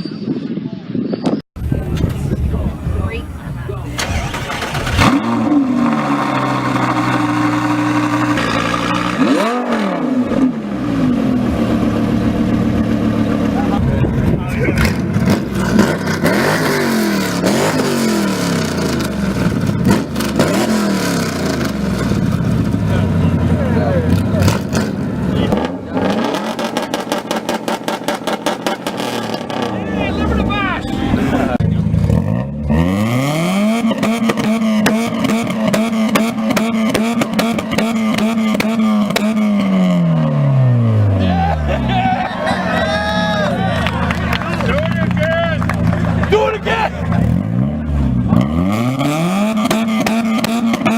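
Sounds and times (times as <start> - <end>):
car engine revving: 1.6 - 50.9
sharp exhaust cracks: 3.9 - 9.5, 24.1 - 30.5.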